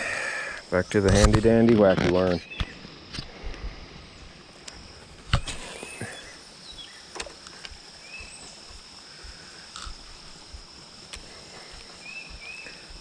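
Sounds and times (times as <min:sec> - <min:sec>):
insects droning: 0:00.0 - 0:13.0
bird chirps: 0:02.3 - 0:02.8, 0:05.4 - 0:07.1, 0:08.0 - 0:08.8, 0:12.0 - 0:12.9.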